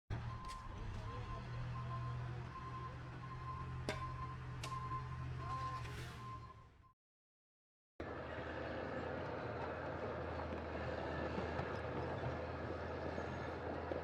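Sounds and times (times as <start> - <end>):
heavy machine engine running: 0.1 - 6.5, 8.0 - 14.0.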